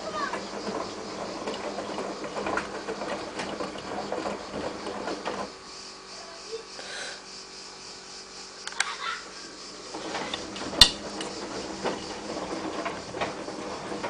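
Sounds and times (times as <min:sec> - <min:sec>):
washing machine humming: 0:00.0 - 0:14.0
washing machine clicks: 0:00.2 - 0:05.5, 0:10.0 - 0:14.0.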